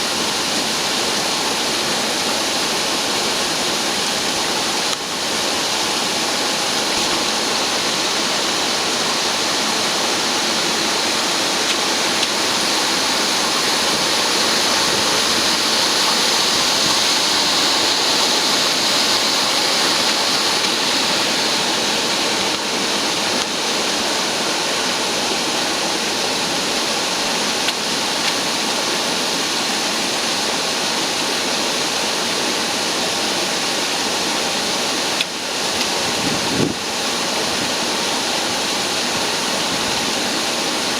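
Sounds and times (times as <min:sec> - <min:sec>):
industrial vacuum cleaner running: 0:00.0 - 0:27.7.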